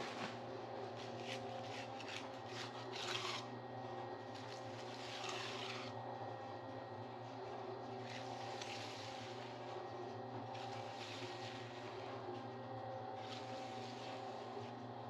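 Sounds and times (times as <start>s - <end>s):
steady machine hum: 0.0s - 15.0s
hand tool scraping wet concrete: 1.2s - 3.5s, 4.9s - 6.0s.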